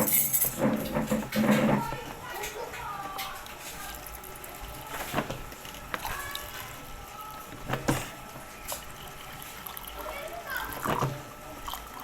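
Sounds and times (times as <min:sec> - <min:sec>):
objects knocking and clunking: 0:00.0 - 0:03.4.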